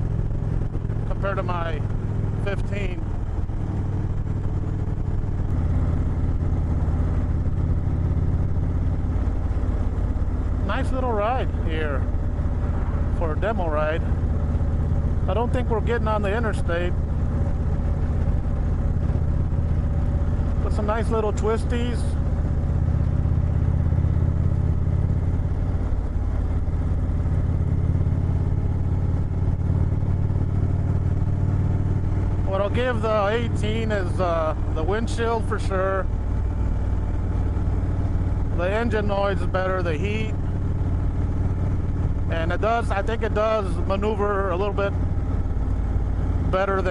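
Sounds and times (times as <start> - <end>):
motorcycle engine running: 0.0 - 46.9.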